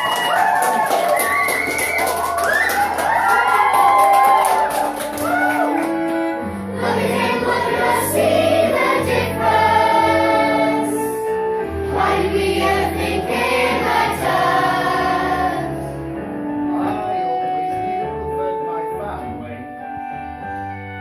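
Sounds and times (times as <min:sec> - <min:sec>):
instrumental backing: 0:02.0 - 0:21.0
ensemble singing in chorus: 0:06.2 - 0:16.3.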